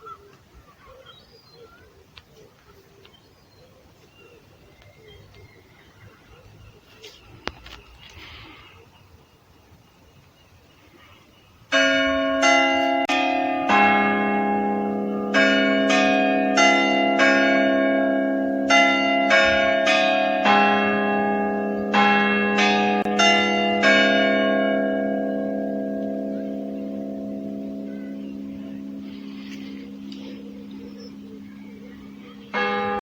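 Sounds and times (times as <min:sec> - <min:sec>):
church clock bells chiming: 0:11.7 - 0:33.0.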